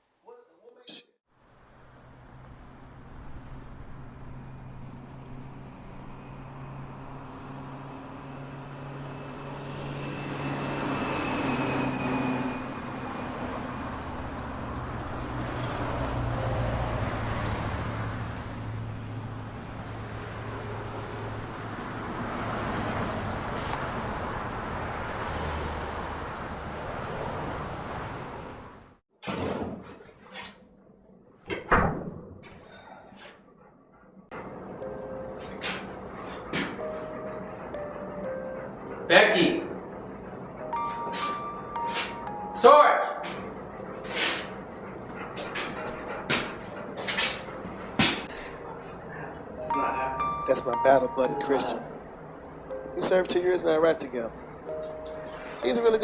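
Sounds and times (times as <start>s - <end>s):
road noise rush: 1.3s - 29.0s, 34.3s - 56.0s
car engine hum: 1.7s - 29.0s.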